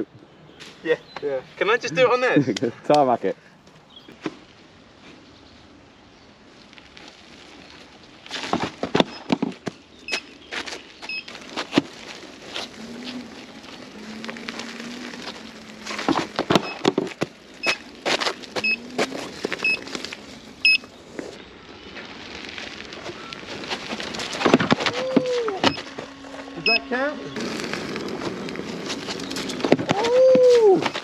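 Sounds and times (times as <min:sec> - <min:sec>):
wheel knocking on stony ground: 0:11.0 - 0:21.4, 0:22.4 - 0:26.8, 0:27.4 - 0:31.0
short high beeps: 0:20.6 - 0:20.8, 0:26.6 - 0:26.9
electric motor whine: 0:23.3 - 0:29.9.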